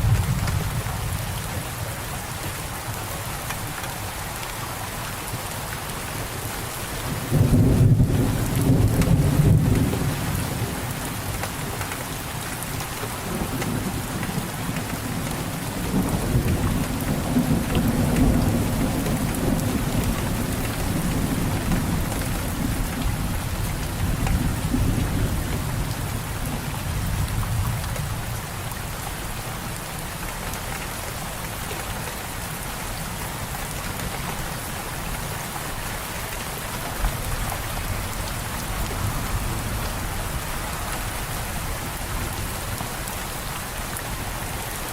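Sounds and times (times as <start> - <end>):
heavy rain falling: 0.0 - 44.9
rolling thunder rumble: 7.1 - 11.1.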